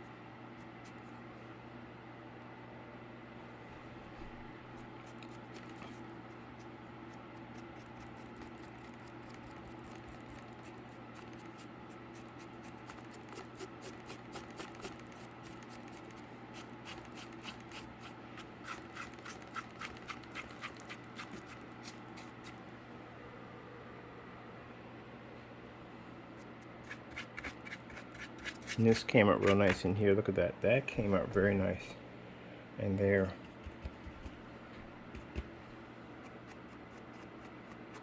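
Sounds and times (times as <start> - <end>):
steady low hum: 0.0 - 38.0
paintbrush scratching cardboard: 4.8 - 22.6, 26.4 - 29.9, 36.2 - 38.0.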